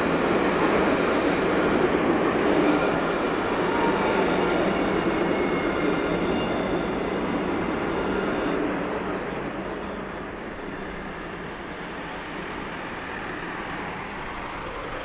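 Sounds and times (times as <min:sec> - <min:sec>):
tram passing: 0:00.0 - 0:15.0.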